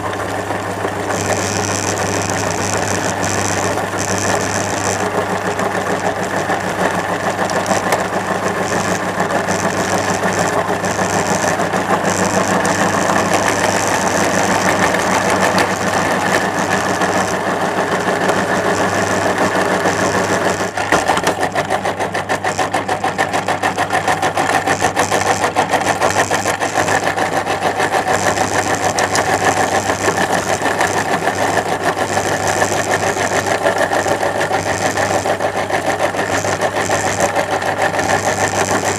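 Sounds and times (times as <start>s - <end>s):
meat grinder humming: 0.0s - 38.9s
hard candy crackling: 1.1s - 20.7s.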